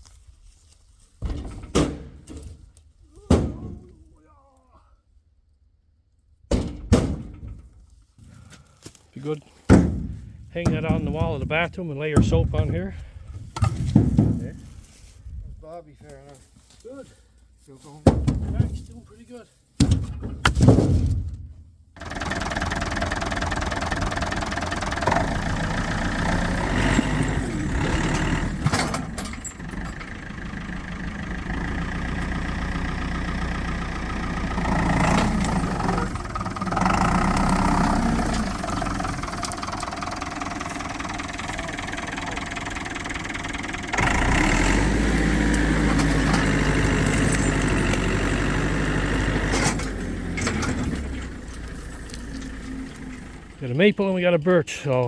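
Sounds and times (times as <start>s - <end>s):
diesel tractor engine revving: 22.0s - 55.0s.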